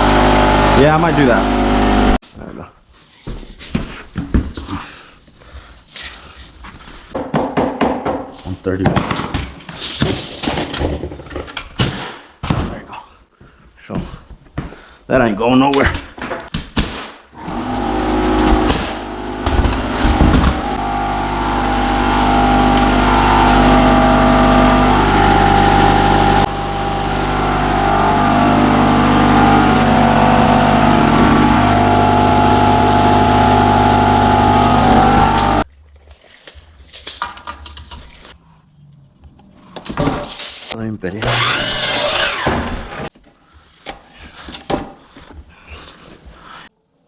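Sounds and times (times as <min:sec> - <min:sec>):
motor-driven machine running: 0:00.0 - 0:02.2, 0:17.4 - 0:35.7, 0:41.2 - 0:43.0.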